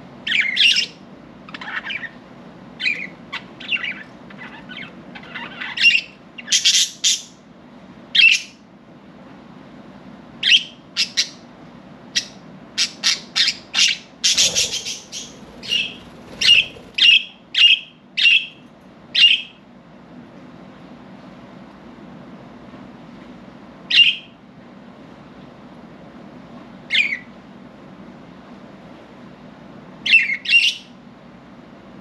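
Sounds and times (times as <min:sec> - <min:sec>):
budgerigars chirping and squawking: 0:00.3 - 0:02.2, 0:02.8 - 0:07.3, 0:12.2 - 0:18.5.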